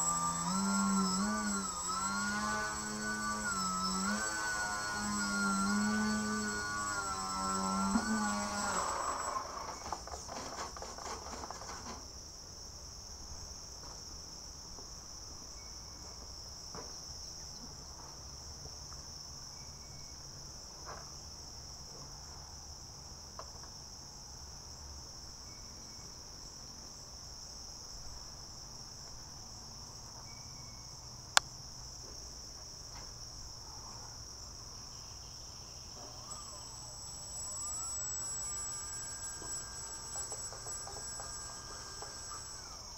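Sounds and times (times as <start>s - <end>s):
pitched whine: 0.0s - 10.6s, 36.0s - 42.9s
insects buzzing: 0.0s - 12.0s, 34.3s - 42.9s.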